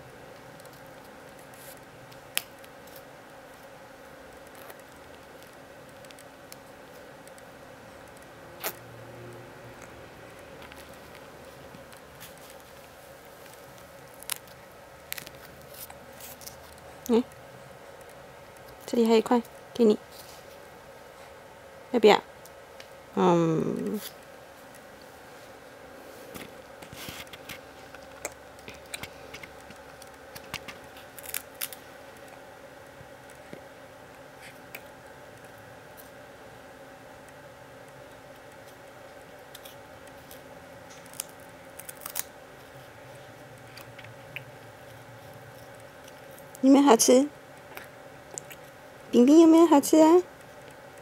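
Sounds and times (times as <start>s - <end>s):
faint steady hum: 0.0s - 51.0s
cracker crunching: 0.3s - 20.7s, 26.3s - 36.2s, 37.2s - 46.6s, 47.5s - 49.1s
cracker being bitten and chewed: 26.8s - 32.4s, 38.1s - 46.6s, 47.6s - 48.8s.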